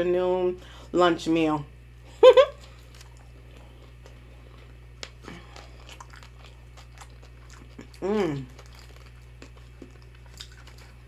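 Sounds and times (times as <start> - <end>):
food crunching: 2.5 - 11.0
chewing mouth sounds: 2.6 - 11.0
person humming: 8.0 - 8.5.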